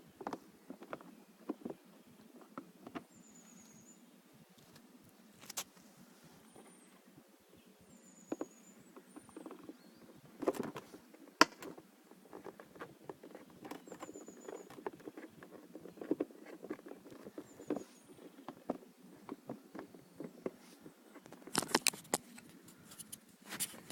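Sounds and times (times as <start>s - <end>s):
hand tools clicking and scraping: 9.1s - 23.9s
plastic housing being handled: 10.4s - 23.9s.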